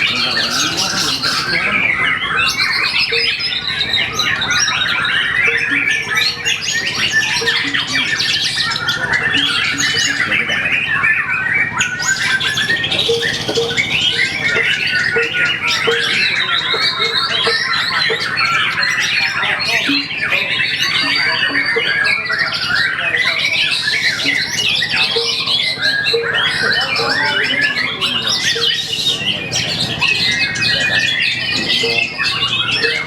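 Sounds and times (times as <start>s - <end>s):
songbird singing: 0.0s - 33.0s.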